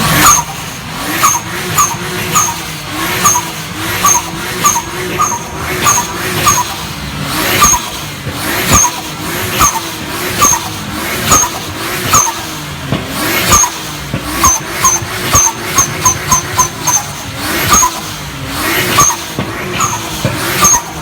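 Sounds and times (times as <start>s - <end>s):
car engine revving: 0.0s - 21.0s
dump valve chirp: 0.1s - 8.0s, 13.4s - 21.0s.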